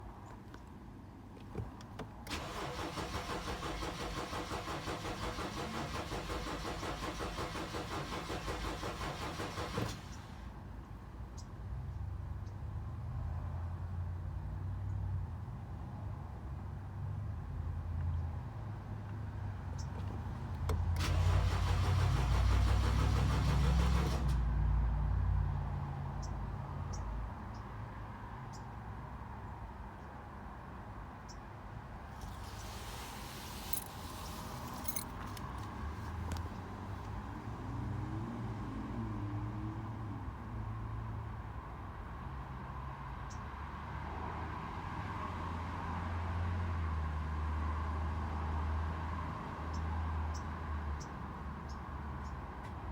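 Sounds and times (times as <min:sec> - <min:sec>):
car engine cranking: 0:02.2 - 0:10.3, 0:20.6 - 0:24.4, 0:32.2 - 0:36.6.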